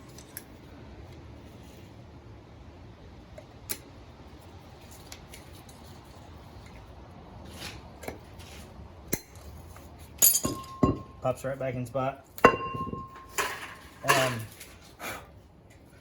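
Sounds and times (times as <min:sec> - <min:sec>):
metal parts clicking and clinking: 0:10.2 - 0:11.2, 0:12.4 - 0:14.8.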